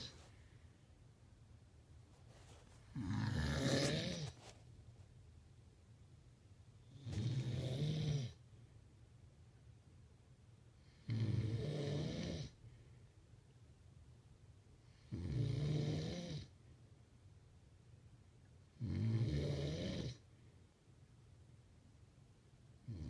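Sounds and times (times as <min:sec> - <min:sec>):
man snoring loudly: 0:03.0 - 0:04.2, 0:07.1 - 0:08.4, 0:11.1 - 0:12.5, 0:15.1 - 0:16.4, 0:18.8 - 0:20.2.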